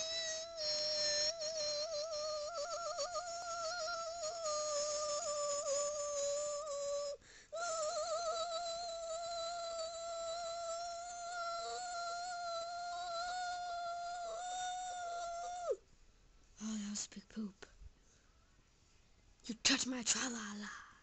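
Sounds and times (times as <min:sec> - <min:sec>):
child holding a high note: 0:00.0 - 0:15.8
child breathing: 0:07.2 - 0:07.6.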